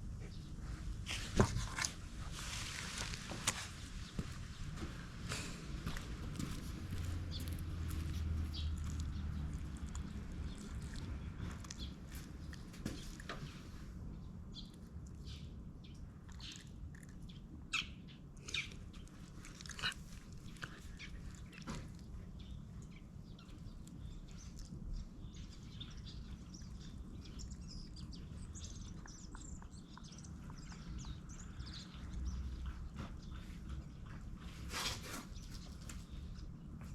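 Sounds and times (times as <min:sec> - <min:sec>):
small birds chirping: 0:00.2 - 0:36.9
steady low rumble: 0:02.0 - 0:17.8.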